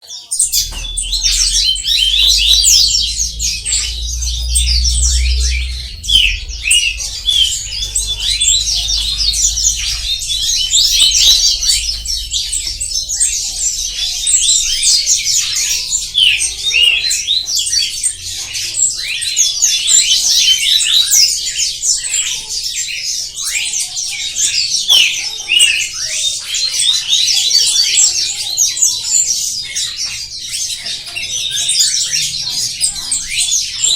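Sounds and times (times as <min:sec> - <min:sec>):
small birds chirping: 0:00.0 - 0:33.9
low rumble: 0:00.4 - 0:19.3.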